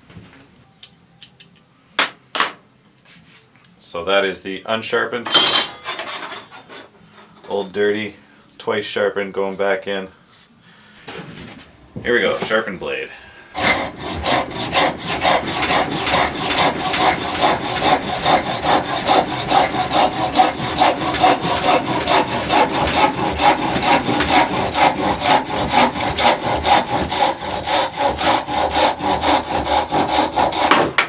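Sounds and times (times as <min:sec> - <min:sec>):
hand saw cutting wood: 0:13.5 - 0:31.0.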